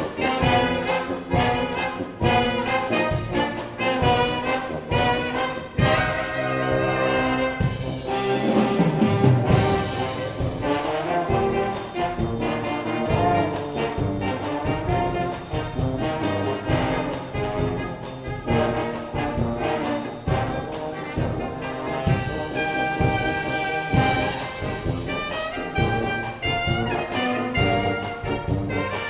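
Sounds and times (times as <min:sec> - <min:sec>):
brass band playing: 0:00.0 - 0:29.0.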